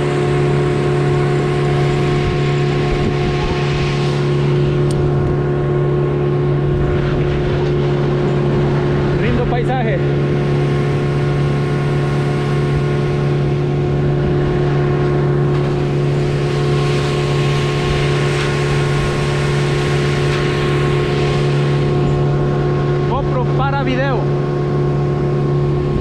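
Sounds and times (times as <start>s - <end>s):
motorboat engine droning: 0.0s - 26.0s
water wash: 0.0s - 26.0s
wind noise: 0.0s - 26.0s.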